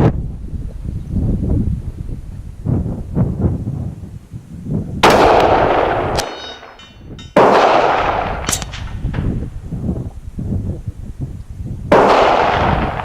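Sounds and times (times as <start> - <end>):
wind buffeting microphone: 0.0 - 13.0
rifle shots with echo: 5.0 - 9.1, 11.9 - 13.0.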